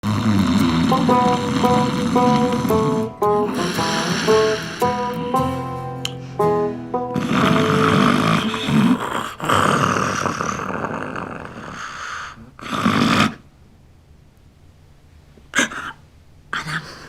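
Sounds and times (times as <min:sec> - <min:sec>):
person snoring heavily: 0:00.0 - 0:13.4.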